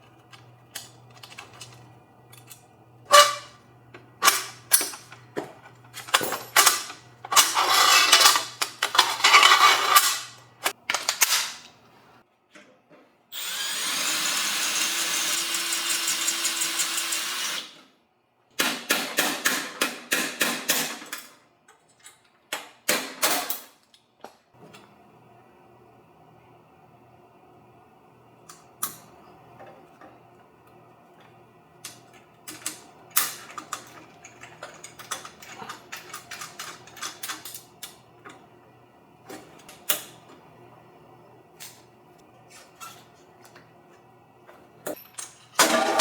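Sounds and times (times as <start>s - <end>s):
power drill running: 13.3s - 17.8s.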